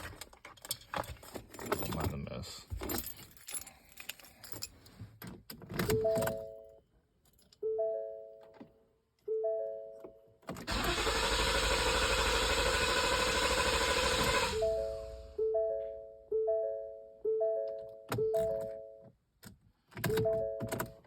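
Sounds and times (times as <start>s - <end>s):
keys rustling: 0.0s - 6.5s
car warning chime: 5.9s - 6.8s, 14.5s - 19.0s, 20.0s - 20.9s
starter cranking engine: 10.7s - 15.2s.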